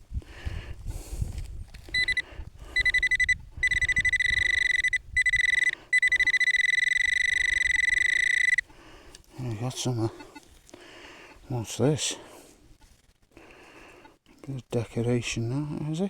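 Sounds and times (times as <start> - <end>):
metal detector pinpointer beeping: 1.9 - 8.7, 9.9 - 10.5.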